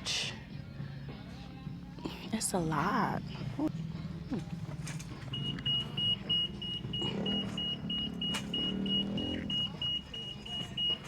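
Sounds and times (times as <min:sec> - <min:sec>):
electronic beeper beeping: 0:05.3 - 0:11.0.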